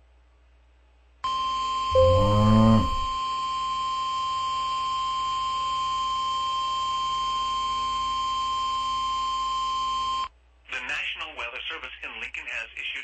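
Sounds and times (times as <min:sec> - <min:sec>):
pitch-bending sound: 0:02.0 - 0:03.2
steady alarm tone: 0:02.0 - 0:03.2.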